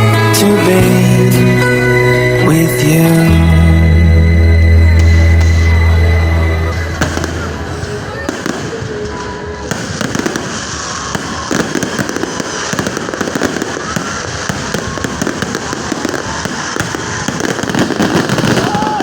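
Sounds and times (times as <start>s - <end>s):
fireworks crackling and popping: 4.5s - 19.0s.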